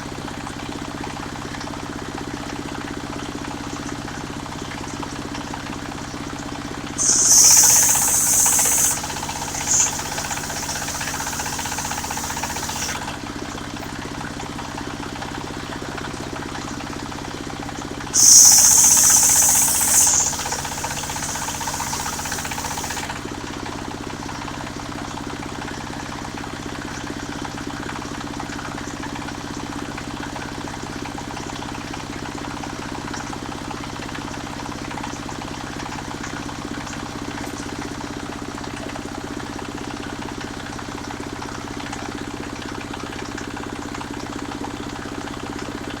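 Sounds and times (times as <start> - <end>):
saw blade cutting wood: 7.0 - 13.2, 18.2 - 23.2
sawmill engine running: 7.0 - 13.2, 18.2 - 23.2.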